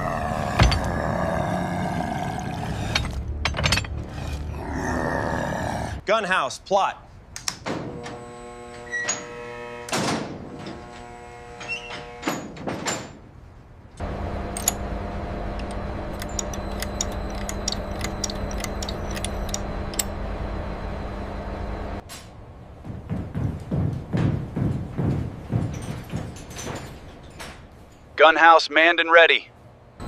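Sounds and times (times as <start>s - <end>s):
sliding door-like clanks: 11.6s - 13.3s, 23.7s - 28.0s
mechanical rumble with ticking: 13.9s - 22.0s
steady humming tone: 14.0s - 22.7s.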